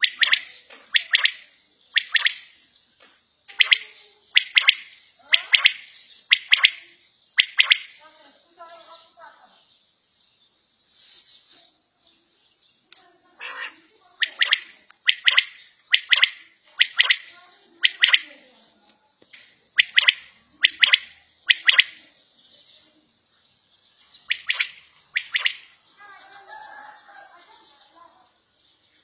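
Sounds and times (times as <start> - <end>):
quail calling: 0.0 - 2.6, 3.5 - 8.0, 13.4 - 18.4, 19.7 - 22.0, 24.2 - 25.8.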